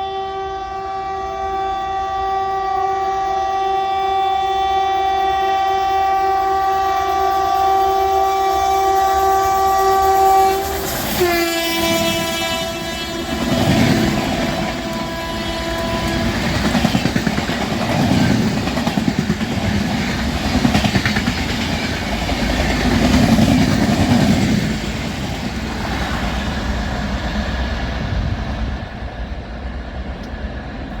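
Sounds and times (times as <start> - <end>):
locomotive horn: 0.0 - 16.8
train rushing past: 3.7 - 31.0.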